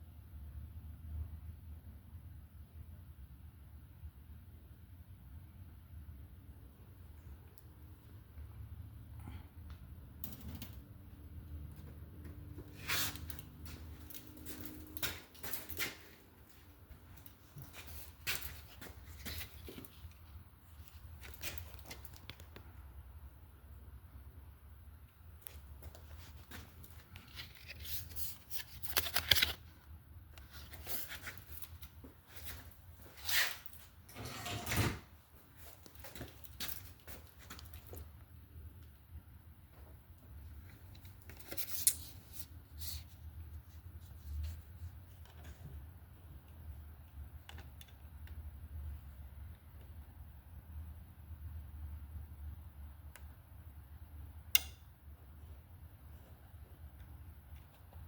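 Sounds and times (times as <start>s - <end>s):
handling rustles and clicks: 11.7s - 22.7s, 25.4s - 34.0s, 35.5s - 38.2s, 40.2s - 45.9s.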